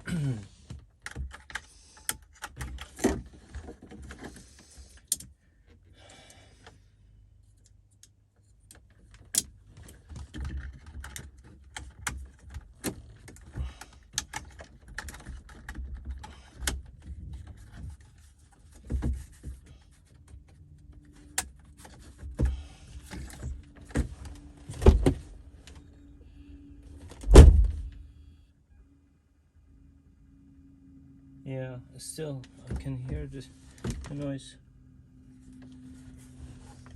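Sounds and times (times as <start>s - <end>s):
parts clicking and rattling: 7.4s - 25.8s.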